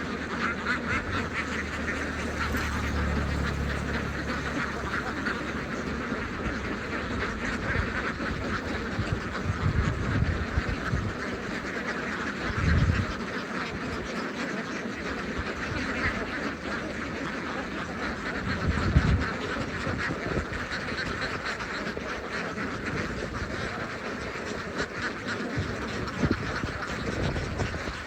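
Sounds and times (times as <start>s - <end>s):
low rumbles: 0.0s - 7.9s
ducks quacking: 0.0s - 28.0s.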